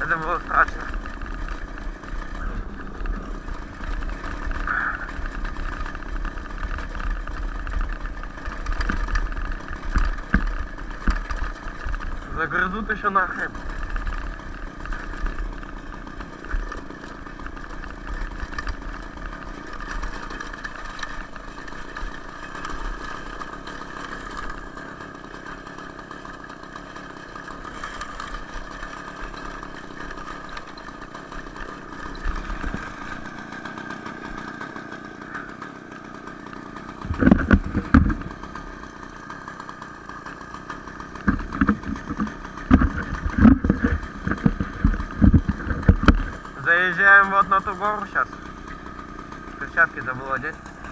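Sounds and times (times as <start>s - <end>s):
two-stroke moped engine running: 0.0s - 50.9s.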